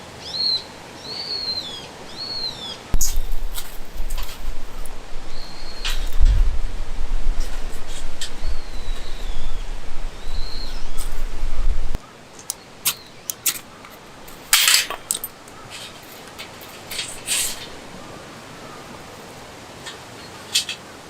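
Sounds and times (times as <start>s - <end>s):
wind rumbling on microphone: 2.0s - 12.0s
high bird chirps: 4.8s - 6.2s, 8.2s - 11.7s.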